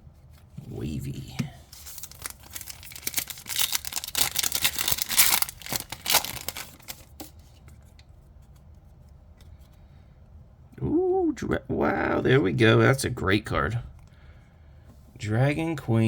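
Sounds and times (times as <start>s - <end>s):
trading cards being handled: 1.2s - 7.9s
foil wrapper crinkling: 1.6s - 7.4s.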